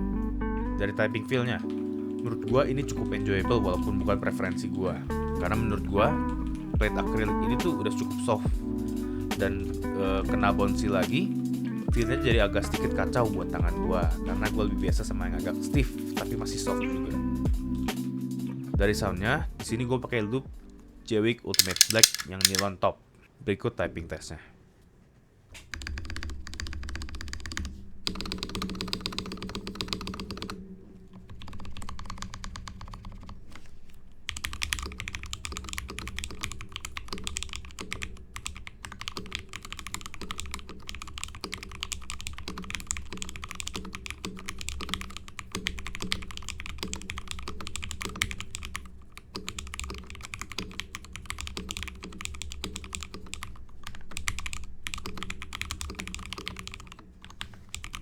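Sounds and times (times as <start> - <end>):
mechanical keyboard typing clacks: 21.6 - 22.7, 34.3 - 58.0.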